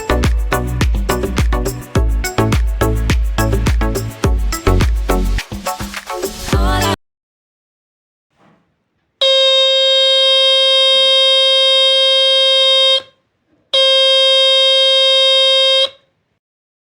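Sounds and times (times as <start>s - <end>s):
high buzzing doorbell tone: 9.2s - 13.1s, 13.8s - 16.0s.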